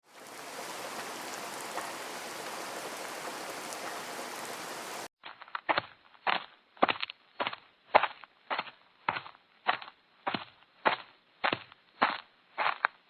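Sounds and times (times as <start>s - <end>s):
steady rain hiss: 0.0s - 5.1s.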